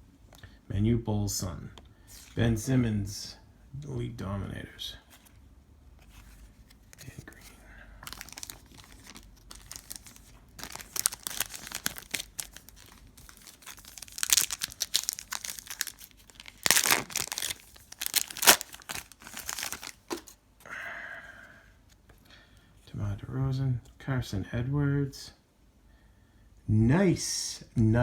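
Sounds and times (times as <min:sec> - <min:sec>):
foil wrapper crinkling and tearing: 0:08.0 - 0:20.3.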